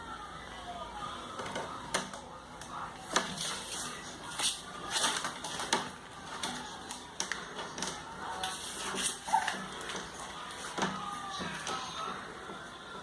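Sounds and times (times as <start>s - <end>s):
scratchy rustles: 3.0s - 6.8s, 7.5s - 10.8s.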